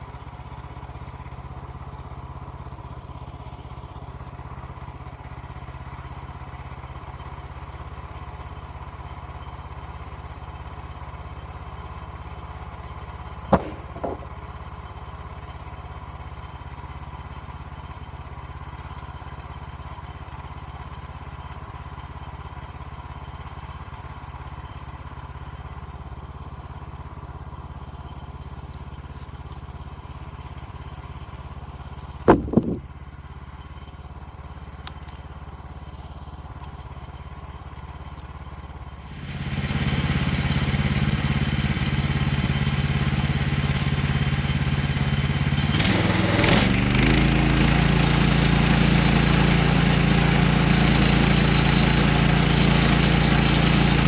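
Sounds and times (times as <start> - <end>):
sawmill engine running: 13.5 - 14.5, 32.3 - 32.9, 39.0 - 54.0
sharp clunk: 13.6 - 14.5, 32.3 - 32.9.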